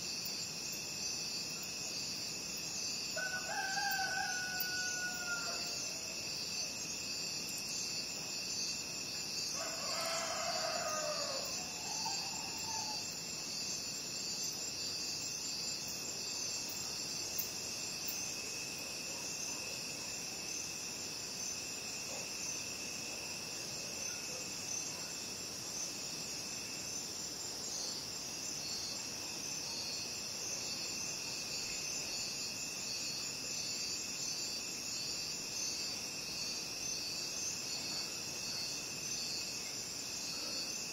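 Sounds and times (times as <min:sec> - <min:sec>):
crickets trilling: 0:00.0 - 0:40.9
rooster crowing: 0:03.2 - 0:05.8, 0:09.6 - 0:13.0.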